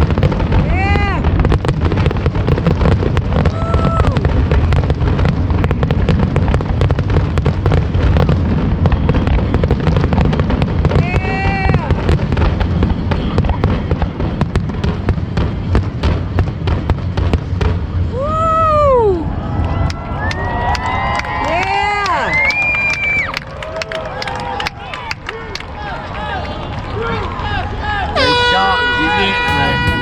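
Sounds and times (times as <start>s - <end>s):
fireworks bangs and crackles: 0.0s - 25.8s, 26.6s - 30.0s
short pitched tones: 28.2s - 30.0s.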